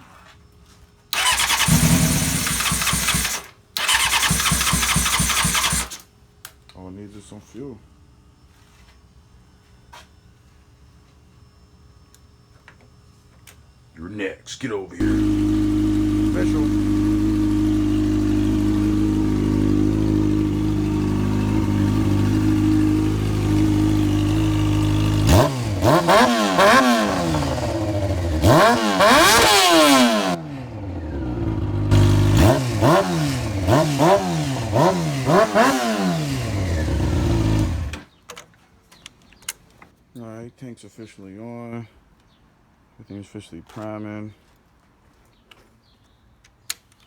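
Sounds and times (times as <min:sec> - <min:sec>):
motorcycle engine revving: 0:01.2 - 0:06.0, 0:15.0 - 0:38.1.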